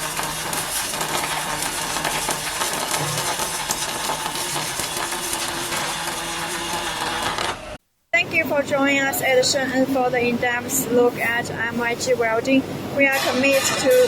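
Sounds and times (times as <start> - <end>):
welding arc crackling and sizzling: 0.0 - 7.8, 8.6 - 14.0.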